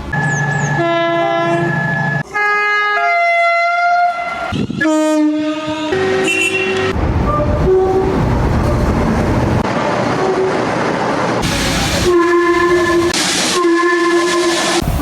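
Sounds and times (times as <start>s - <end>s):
train horn blasts: 0.7s - 8.2s, 12.0s - 14.8s
moving train rumble: 3.8s - 15.0s.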